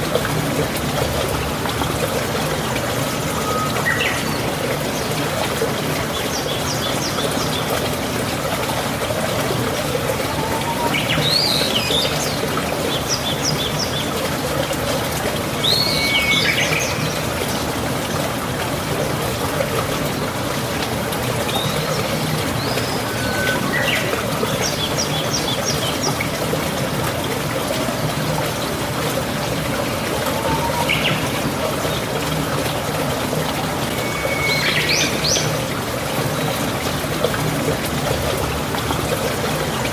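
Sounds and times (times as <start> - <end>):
water trickling: 0.0 - 39.9
birds calling: 10.0 - 14.0, 21.5 - 26.2, 29.8 - 31.4.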